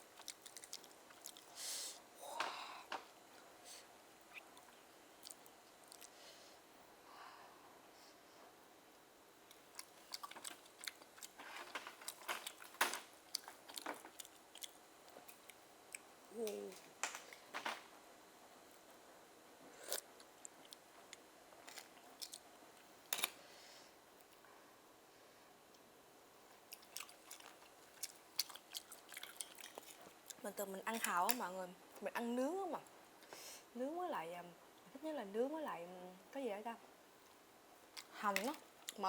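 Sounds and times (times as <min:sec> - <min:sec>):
wet chewing smacks and clicks: 0:00.1 - 0:01.5, 0:04.6 - 0:06.1, 0:09.5 - 0:11.4, 0:13.3 - 0:16.1, 0:19.9 - 0:22.4, 0:26.5 - 0:30.4
person humming: 0:16.3 - 0:16.8.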